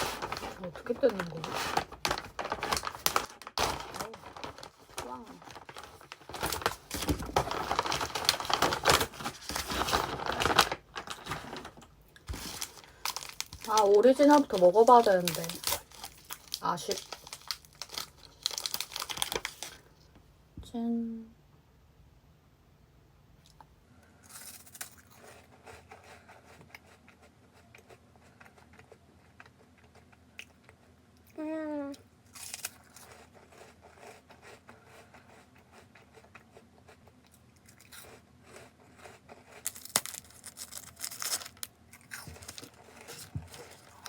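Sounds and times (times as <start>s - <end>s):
plastic wrapper crackling: 0.0s - 19.9s, 39.6s - 44.0s.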